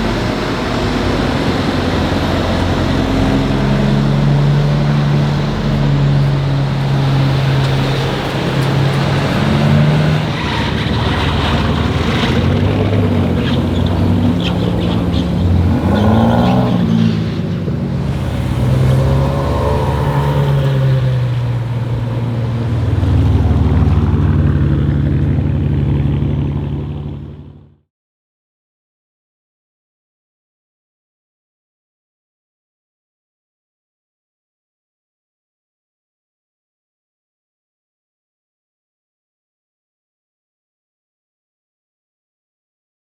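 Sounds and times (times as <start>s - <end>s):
car engine running at low revs: 0.0s - 27.8s
exhaust pops and crackles: 6.2s - 27.8s.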